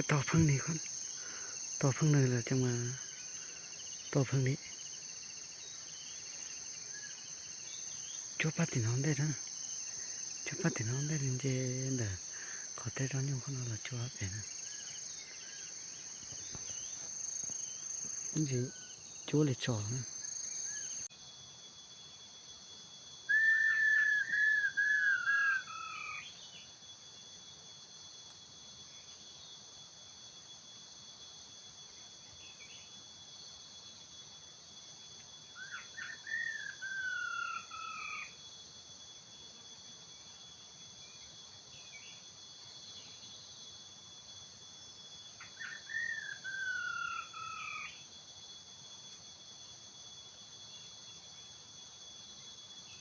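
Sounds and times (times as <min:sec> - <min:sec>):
insects droning: 0:00.0 - 0:53.0
laughingthrush whistled call: 0:23.3 - 0:25.9.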